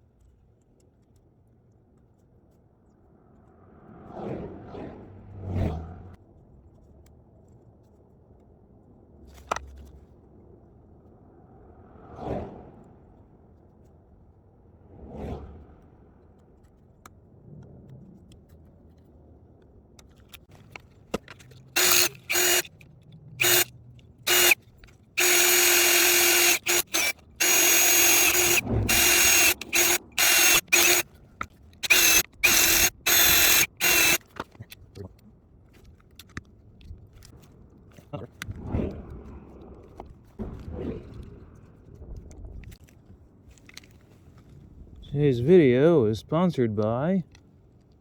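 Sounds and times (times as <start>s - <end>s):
power drill bursts: 21.8s - 22.7s, 23.4s - 23.7s, 24.3s - 24.6s, 25.2s - 31.1s, 31.8s - 34.2s.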